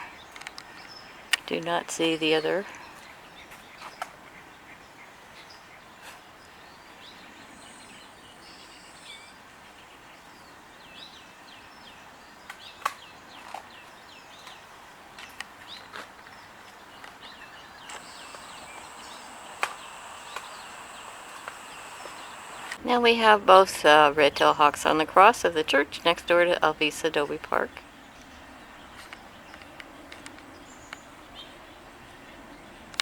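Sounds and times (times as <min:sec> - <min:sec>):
outdoor background hiss: 0:00.0 - 0:03.5, 0:05.4 - 0:33.0
songbirds warbling: 0:17.4 - 0:23.2
sharp clicks: 0:17.9 - 0:22.8.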